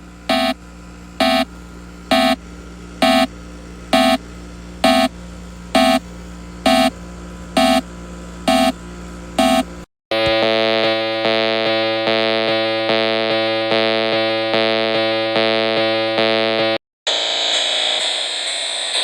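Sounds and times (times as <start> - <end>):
alarm beep: 0.3 - 0.6, 1.2 - 1.5, 2.1 - 2.4, 3.0 - 3.3, 3.9 - 4.2, 4.8 - 5.1, 5.8 - 6.0, 6.7 - 6.9, 7.6 - 7.8, 8.5 - 8.8, 9.4 - 12.3
pulsing buzzy electronic tone: 0.3 - 0.6, 1.2 - 1.5, 2.1 - 2.4, 3.0 - 3.3, 3.9 - 4.2, 4.8 - 6.0, 6.6 - 7.0, 7.6 - 8.8, 9.4 - 19.0
harsh distorted noise: 9.4 - 19.0.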